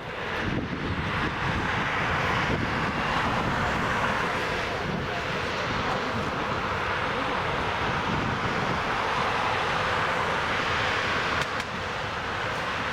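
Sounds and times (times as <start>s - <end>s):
jet engine noise: 0.0s - 12.9s.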